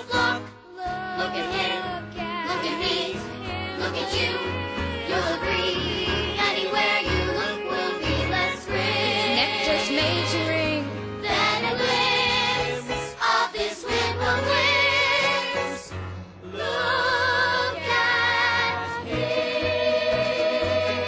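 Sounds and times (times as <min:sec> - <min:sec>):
children's chorus singing: 0:00.0 - 0:10.0, 0:11.3 - 0:15.9, 0:16.5 - 0:21.0
musical accompaniment: 0:00.0 - 0:21.0.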